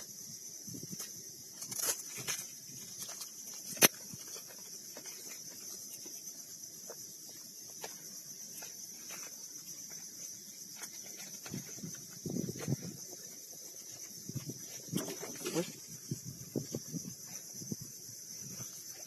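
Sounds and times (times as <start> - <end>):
insects droning: 0.0 - 19.0.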